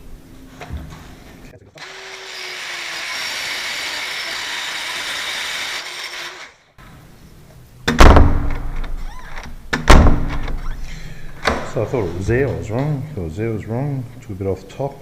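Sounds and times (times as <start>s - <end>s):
power tool grinding metal: 1.8s - 6.6s
door shutting with thuds: 7.9s - 10.8s.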